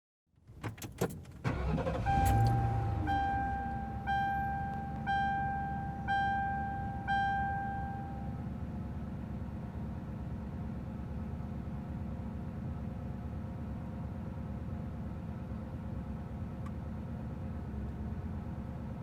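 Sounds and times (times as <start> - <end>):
car engine starting and idling: 0.4 - 19.0
warning beep: 1.9 - 8.3.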